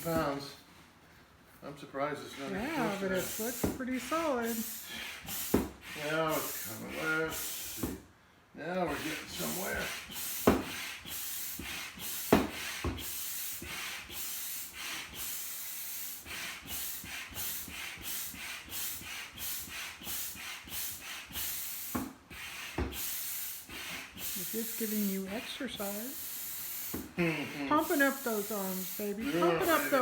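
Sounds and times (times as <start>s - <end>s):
hand pump hissing air: 2.2s - 8.1s, 8.8s - 30.0s
pump knocking: 10.4s - 10.8s.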